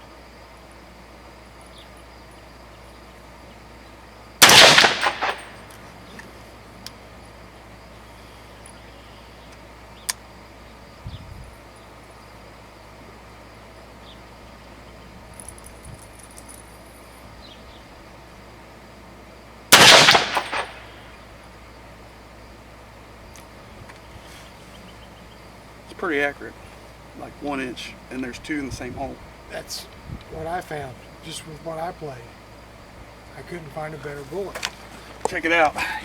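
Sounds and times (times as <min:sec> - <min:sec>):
rifle shot with echo: 0:04.4 - 0:05.6, 0:19.7 - 0:21.0.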